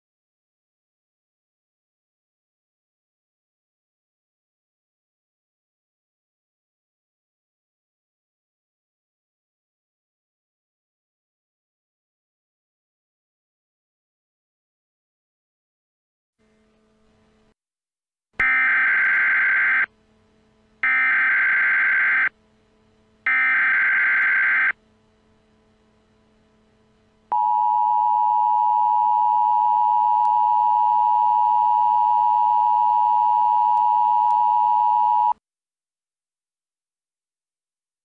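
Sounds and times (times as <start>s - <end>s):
steady two-tone attention signal: 23.3s - 24.8s, 27.3s - 35.4s.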